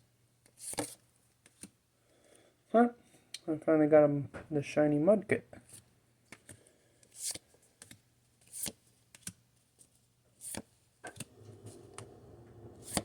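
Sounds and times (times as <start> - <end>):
faint low hum: 11.2 - 13.0
trading cards swishing: 12.7 - 13.0.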